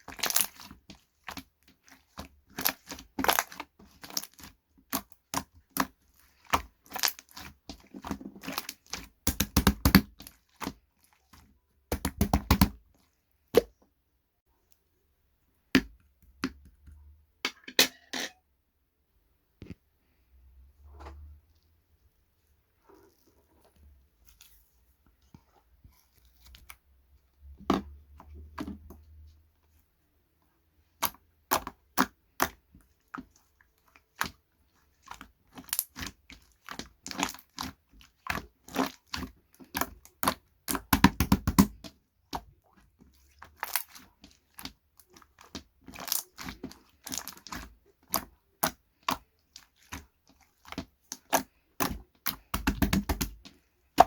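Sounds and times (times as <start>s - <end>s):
crisp crackling and crunching: 0.0s - 12.5s, 42.4s - 54.0s.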